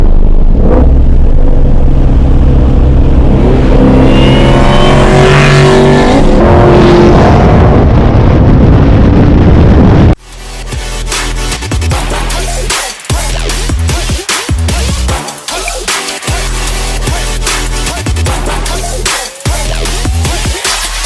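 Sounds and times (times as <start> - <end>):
car engine at full throttle: 0.0 - 10.3.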